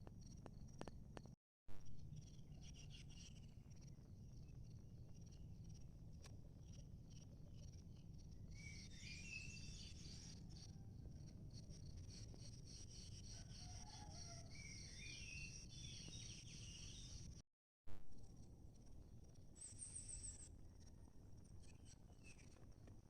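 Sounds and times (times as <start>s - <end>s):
faint low rumble: 17.9s - 23.0s.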